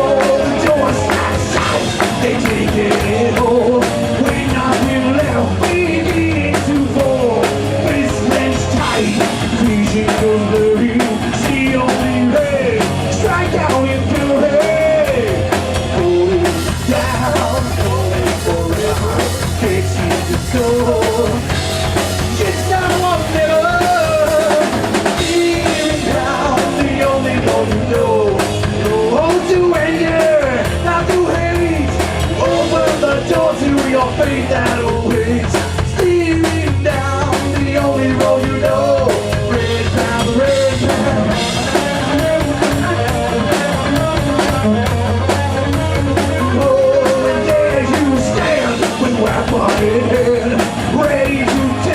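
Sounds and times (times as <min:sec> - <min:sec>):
rock band playing live: 0:00.0 - 0:51.9.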